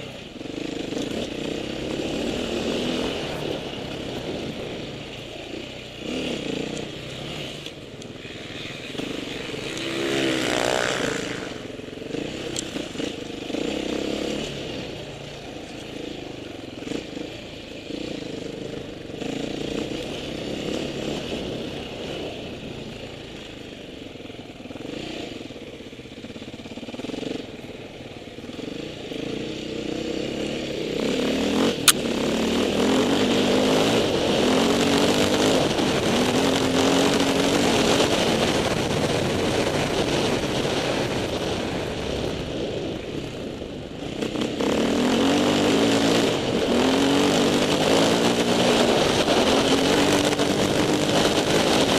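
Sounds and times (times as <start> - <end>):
motorcycle engine revving: 0.0 - 51.9
sharp click: 31.8 - 32.1.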